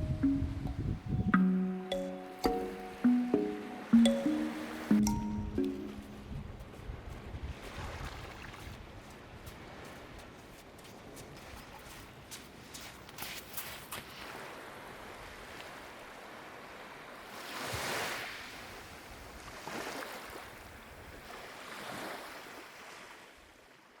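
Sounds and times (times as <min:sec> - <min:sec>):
sea waves breaking on beach: 0:07.4 - 0:23.5.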